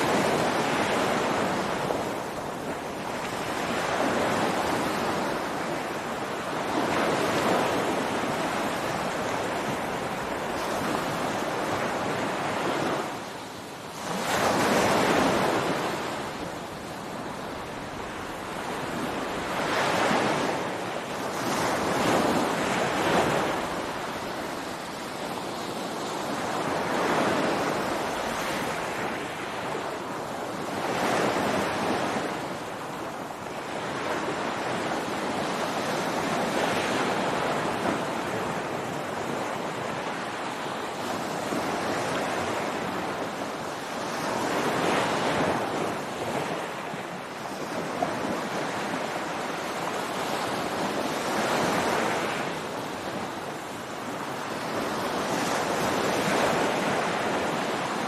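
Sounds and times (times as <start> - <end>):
ocean waves breaking on beach: 0.0 - 58.0.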